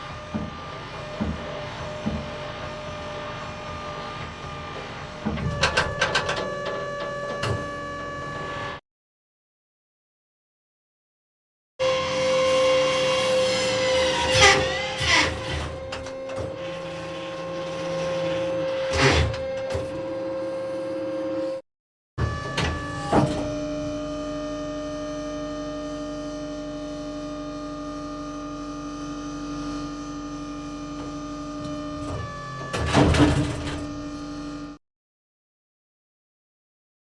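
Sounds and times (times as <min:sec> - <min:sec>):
mechanical clunk: 0:32.1 - 0:33.9.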